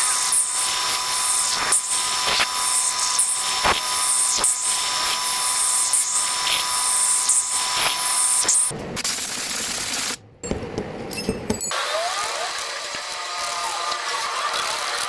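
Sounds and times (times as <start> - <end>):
metal lathe whining: 0.0 - 8.7, 11.7 - 15.0.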